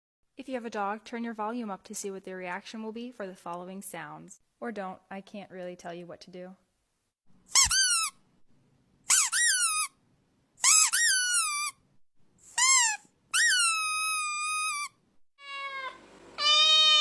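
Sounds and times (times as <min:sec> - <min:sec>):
squeaky animal calls: 0:07.5 - 0:08.2, 0:09.1 - 0:09.9, 0:10.6 - 0:11.8, 0:12.6 - 0:17.0.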